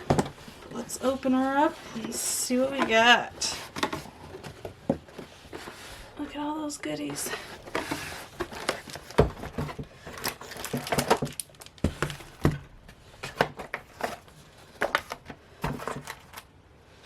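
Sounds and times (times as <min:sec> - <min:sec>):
packaging crinkling: 0:07.5 - 0:12.5.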